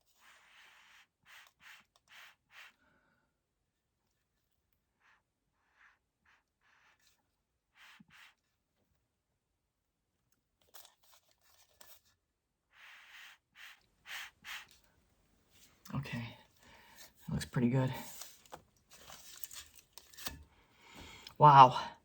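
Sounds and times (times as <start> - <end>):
faint handling rustles and scrapes: 10.3 - 12.2, 13.0 - 21.6.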